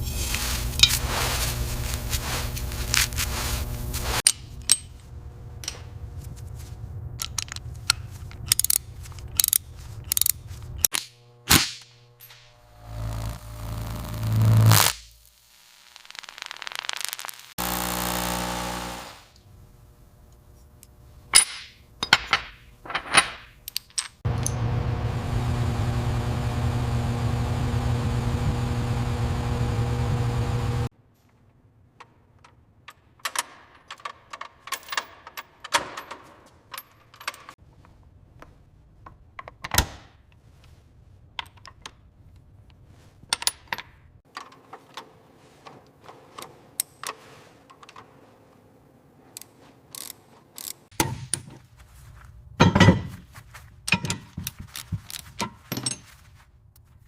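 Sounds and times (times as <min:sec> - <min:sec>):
motorised tool running: 0:11.0 - 0:15.0, 0:16.0 - 0:19.4, 0:24.3 - 0:30.9.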